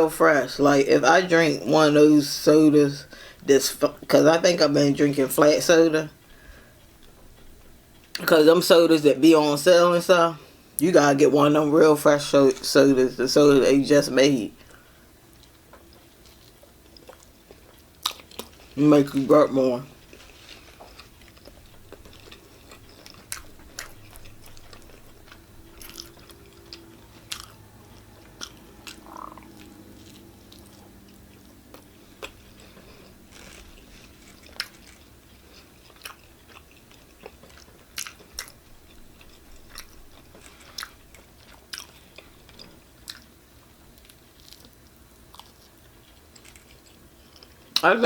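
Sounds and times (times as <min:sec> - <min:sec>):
chewing and biting pizza: 0:14.7 - 0:19.3, 0:20.0 - 0:47.8
mouth clicks and smacks: 0:28.9 - 0:29.6.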